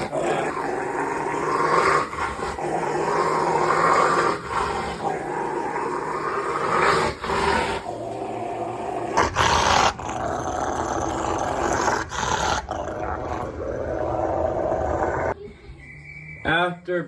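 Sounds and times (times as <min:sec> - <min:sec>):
dog grumbling purr: 0:06.8 - 0:15.4.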